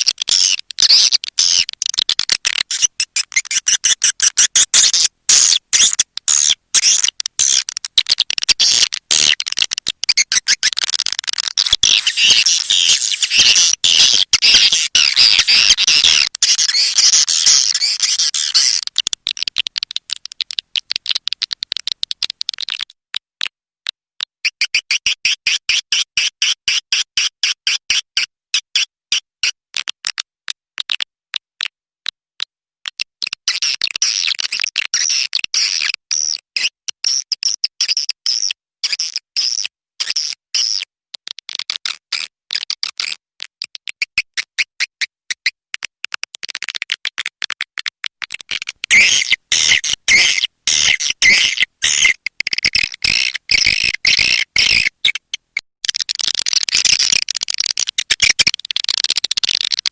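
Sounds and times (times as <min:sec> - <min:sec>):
swiftlets chirping and chattering: 0:00.0 - 0:22.4, 0:48.5 - 0:55.2, 0:55.9 - 0:59.8.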